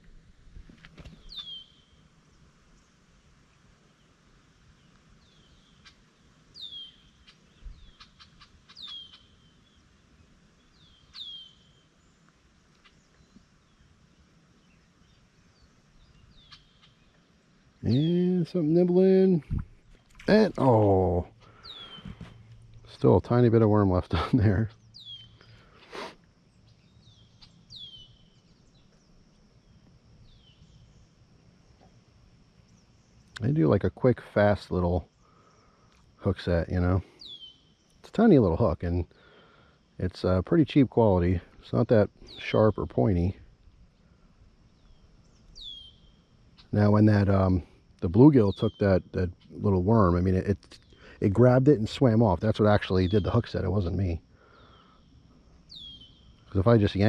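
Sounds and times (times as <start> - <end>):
bird whistling call: 1.3 - 1.9, 6.6 - 9.3, 10.8 - 11.7, 21.6 - 22.2, 44.8 - 46.2, 55.7 - 56.2
faint clicks: 12.2 - 13.5.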